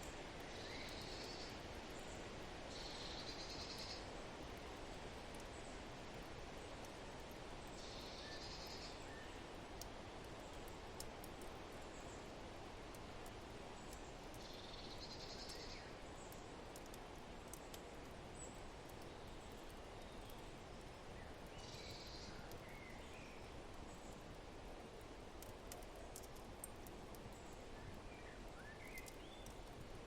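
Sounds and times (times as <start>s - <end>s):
fireplace crackles: 23.7s - 30.0s.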